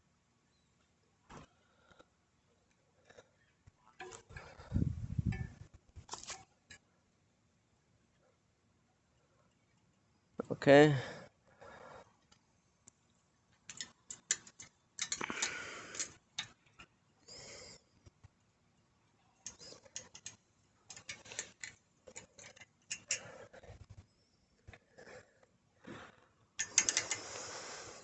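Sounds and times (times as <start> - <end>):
wrench clicking on brake hardware: 13.7 - 16.5, 19.4 - 23.4, 26.6 - 27.4.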